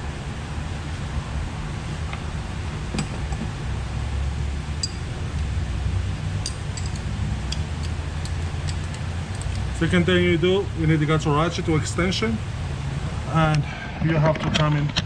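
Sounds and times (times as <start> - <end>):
low background rumble: 0.0 - 14.4
tools clicking and clinking: 4.8 - 5.1, 6.4 - 9.9.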